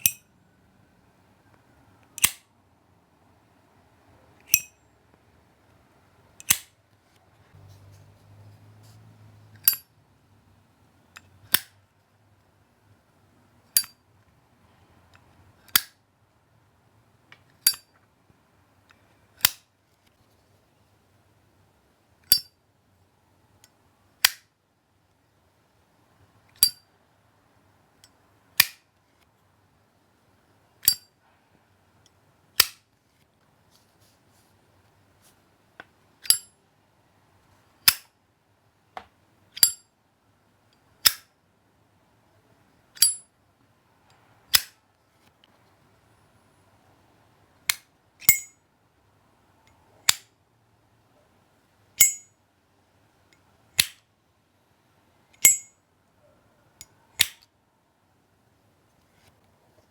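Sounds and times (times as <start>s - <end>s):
metal lighter lids clicking: 0.0s - 0.2s, 2.2s - 2.4s, 4.5s - 4.8s, 6.4s - 6.7s, 9.6s - 9.8s, 30.8s - 31.1s, 36.2s - 36.5s, 37.8s - 38.0s, 39.6s - 39.8s, 43.0s - 43.2s, 48.2s - 48.5s, 52.0s - 52.2s, 55.4s - 55.7s, 57.2s - 57.4s.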